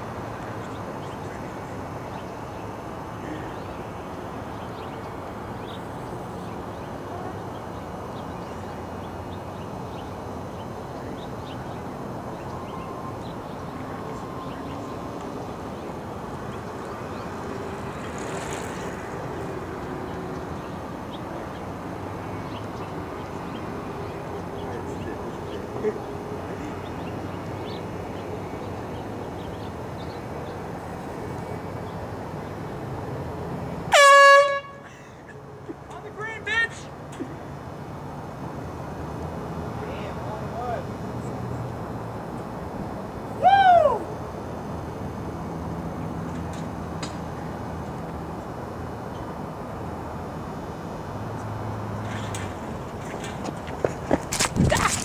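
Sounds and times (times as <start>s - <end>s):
outdoor background noise: 0.0s - 55.0s
steady background noise: 0.0s - 55.0s
air horn blast: 33.9s - 34.9s.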